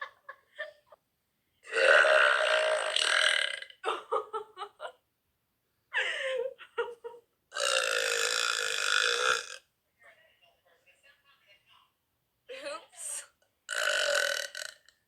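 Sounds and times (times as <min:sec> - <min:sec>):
girls burping loudly: 0:01.6 - 0:03.9, 0:07.5 - 0:09.6, 0:13.7 - 0:14.9.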